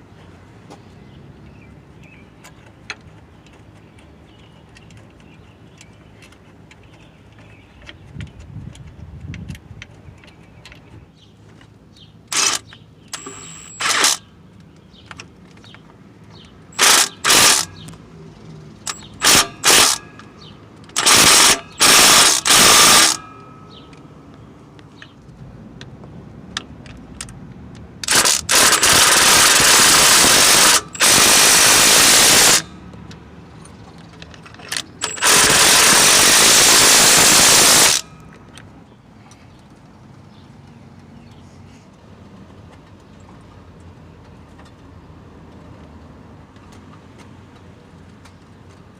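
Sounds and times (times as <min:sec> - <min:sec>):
impact wrench running: 0:12.3 - 0:12.6, 0:13.2 - 0:14.2, 0:16.8 - 0:17.9, 0:18.9 - 0:20.3, 0:20.9 - 0:23.4, 0:28.0 - 0:32.7, 0:35.0 - 0:38.1.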